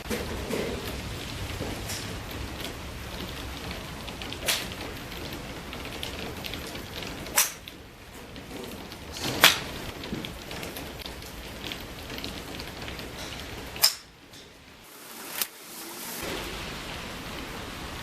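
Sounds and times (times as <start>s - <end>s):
golf club striking ball: 4.4s - 4.8s, 7.3s - 7.7s, 9.2s - 9.8s, 13.2s - 14.5s
steady hiss: 12.6s - 18.0s.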